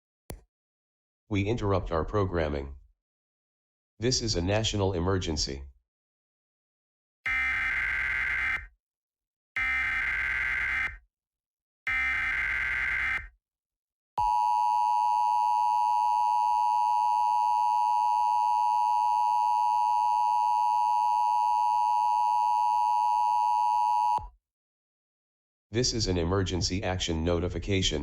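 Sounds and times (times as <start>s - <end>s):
steady two-tone beep: 14.2s - 24.2s.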